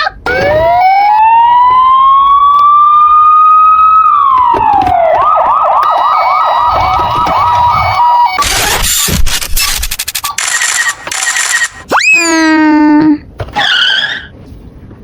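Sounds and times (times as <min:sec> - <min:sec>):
toy siren wailing and yelping: 0:00.0 - 0:08.8
two-tone beeping: 0:05.8 - 0:09.2.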